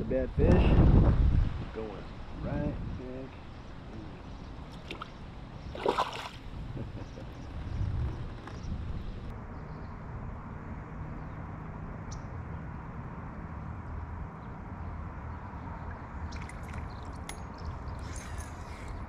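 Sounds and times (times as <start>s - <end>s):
wind on microphone: 0.0s - 5.0s, 5.6s - 9.3s
water noise: 3.7s - 9.3s, 15.8s - 19.0s.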